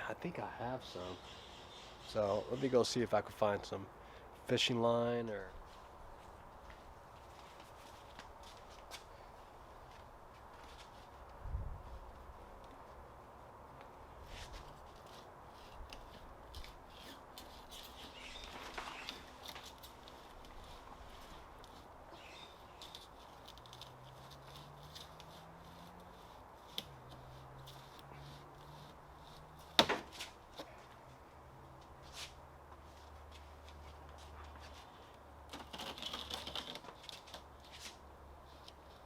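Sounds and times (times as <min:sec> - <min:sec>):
small clicks and rattles of handling: 0:35.4 - 0:37.5.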